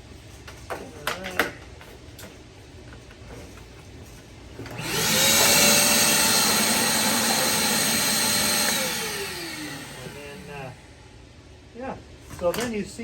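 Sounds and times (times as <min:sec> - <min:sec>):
shop vacuum motor whine: 0:04.6 - 0:11.0.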